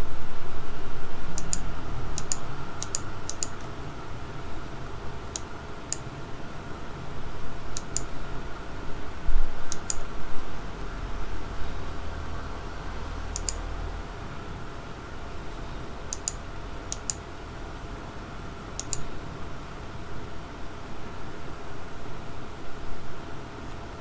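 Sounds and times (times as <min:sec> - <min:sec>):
mechanical keyboard key clicks: 0:13.4 - 0:13.6.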